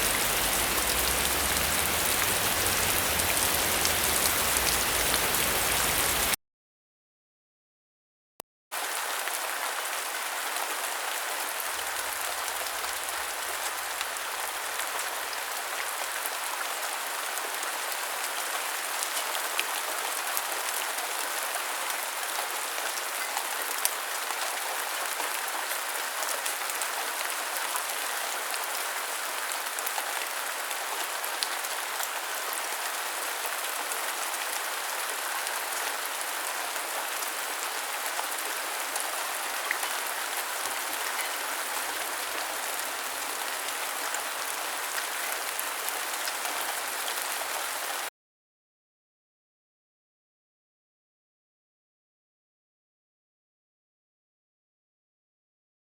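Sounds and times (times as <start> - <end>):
waterfall rushing: 0.0 - 6.4.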